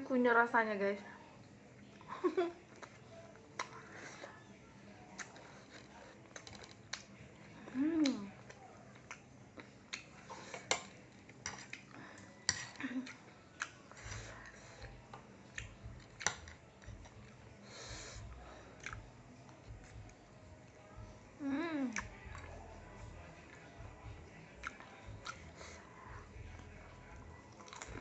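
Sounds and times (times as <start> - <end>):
chewing: 1.4 - 20.9, 21.8 - 28.0
person humming: 21.4 - 22.0.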